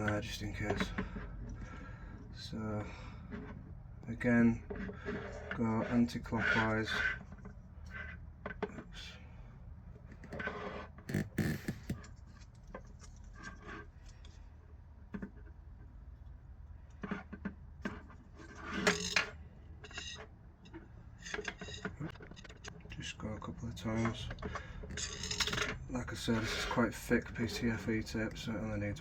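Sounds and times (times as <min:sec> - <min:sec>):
hands rubbing and rustling tape: 0:10.1 - 0:15.4.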